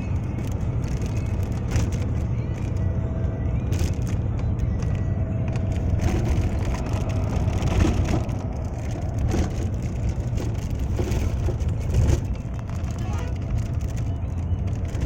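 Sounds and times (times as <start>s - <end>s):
road vehicle rumble: 0.0s - 15.0s
crackling and clicking: 0.1s - 2.9s, 3.6s - 15.0s.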